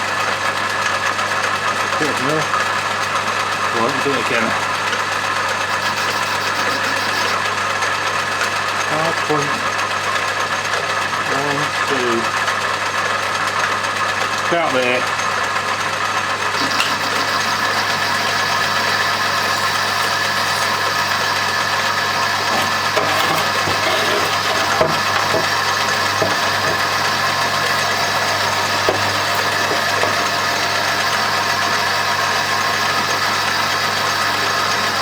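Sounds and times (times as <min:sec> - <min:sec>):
metal lathe cutting steel: 0:05.6 - 0:07.5, 0:14.6 - 0:35.0.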